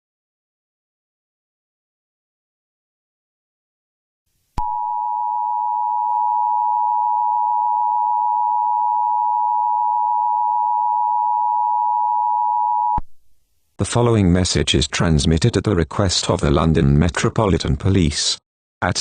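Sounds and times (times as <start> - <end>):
steady electronic beep tone: 4.6 - 13.0.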